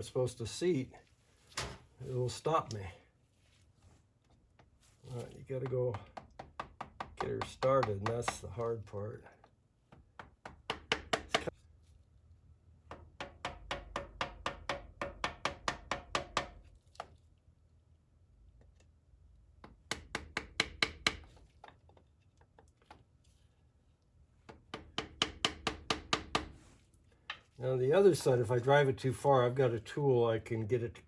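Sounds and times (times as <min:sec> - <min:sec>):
wooden stick tapping on metal: 0:05.6 - 0:08.6, 0:09.9 - 0:11.5, 0:12.9 - 0:16.6.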